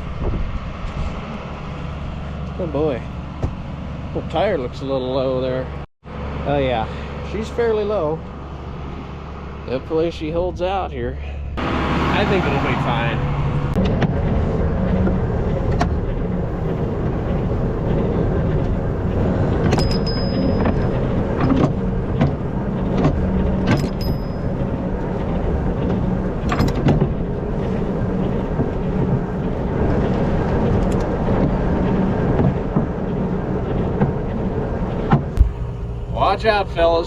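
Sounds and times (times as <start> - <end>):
sharp clunks and rattles: 3.3 - 3.7, 13.7 - 36.1
tractor engine running: 7.0 - 37.0.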